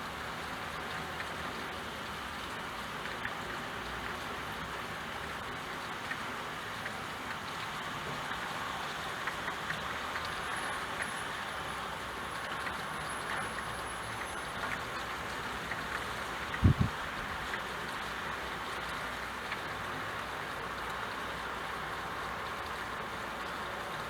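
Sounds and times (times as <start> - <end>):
steady rain: 0.0 - 24.0
raindrop ticks: 0.3 - 24.0.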